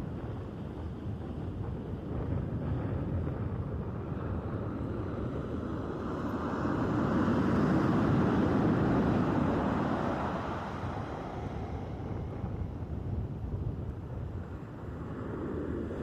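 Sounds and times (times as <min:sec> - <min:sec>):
waves breaking on shore: 0:00.0 - 0:16.0.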